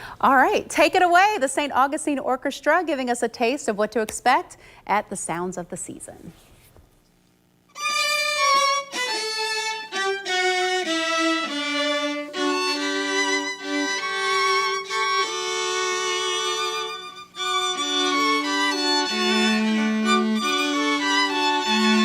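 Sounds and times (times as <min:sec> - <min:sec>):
violin melody with vibrato: 0:07.8 - 0:22.0
lower held string notes: 0:16.7 - 0:22.0.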